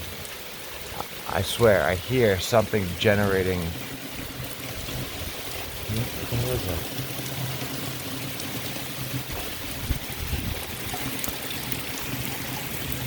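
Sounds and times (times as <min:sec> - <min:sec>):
heavy rain pouring: 0:00.0 - 0:13.0.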